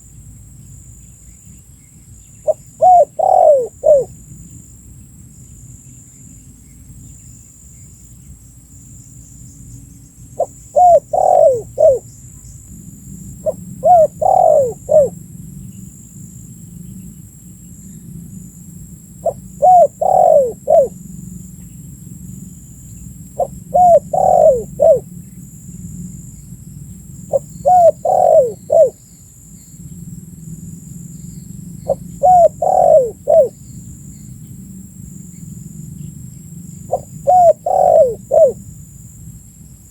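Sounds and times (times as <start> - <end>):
dove cooing: 2.4 - 4.2, 10.4 - 12.1, 13.4 - 15.3, 19.2 - 21.1, 23.3 - 25.2, 27.2 - 29.0, 31.7 - 33.9, 36.8 - 38.8.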